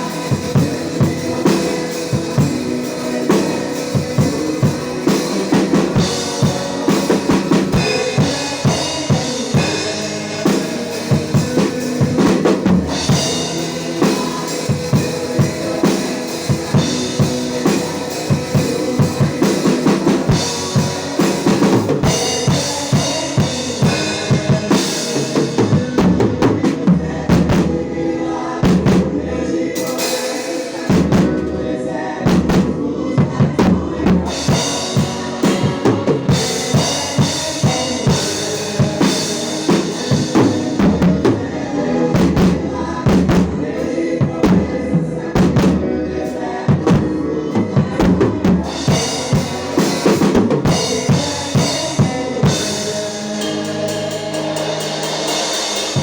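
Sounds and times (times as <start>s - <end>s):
band playing worship song: 0.0s - 56.0s
bass drum and snare beat: 47.7s - 56.0s
cymbals: 48.6s - 56.0s.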